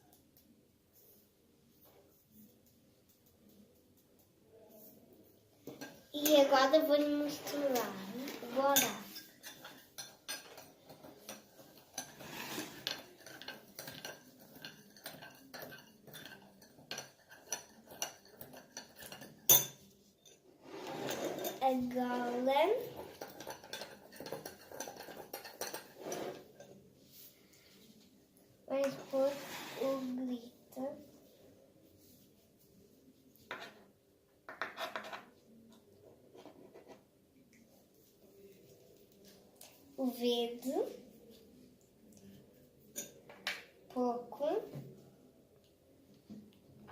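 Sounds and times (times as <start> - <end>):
spoon clinking and scraping bowl: 5.6 - 26.9, 42.9 - 43.3
rustling scrapes: 6.8 - 9.7, 11.2 - 13.3, 20.5 - 23.2, 24.6 - 28.2, 29.0 - 30.5.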